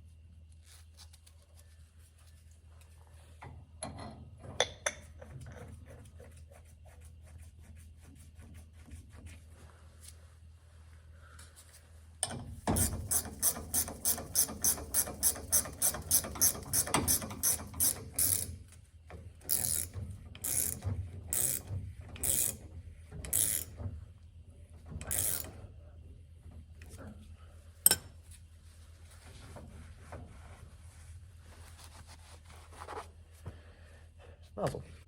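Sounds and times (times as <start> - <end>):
ratchet wrench clicking: 12.8 - 18.6, 19.5 - 22.6, 23.3 - 23.8, 25.0 - 25.5.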